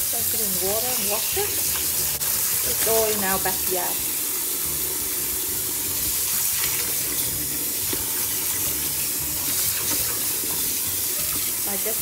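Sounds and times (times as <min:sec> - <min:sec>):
fruit washed by hand in water: 0:00.0 - 0:12.0
tap running into a sink: 0:01.5 - 0:04.0, 0:05.1 - 0:11.6.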